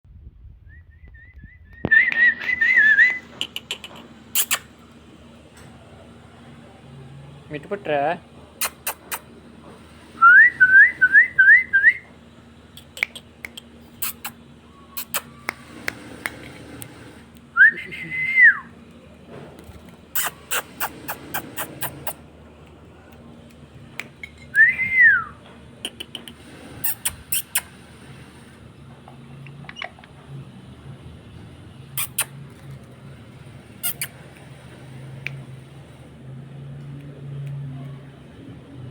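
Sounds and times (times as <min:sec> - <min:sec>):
parrot whistling: 0:33.8 - 0:34.2.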